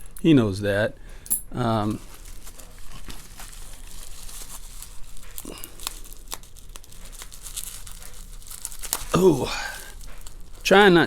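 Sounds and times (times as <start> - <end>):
packaging crinkling and tearing: 1.8 - 10.7.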